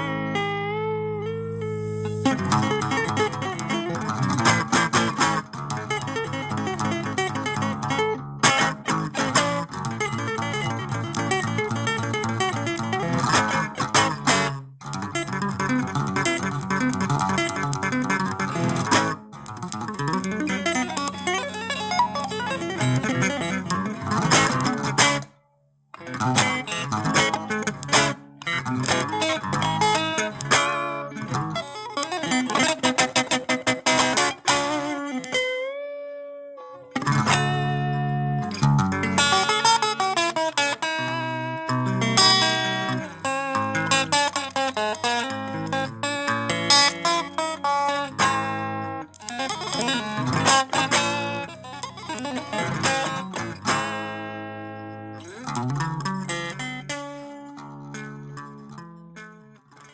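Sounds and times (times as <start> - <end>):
guitar fast picked notes: 0.0 - 25.4, 26.0 - 59.9
guitar note bent and held: 0.1 - 5.8, 49.1 - 54.1.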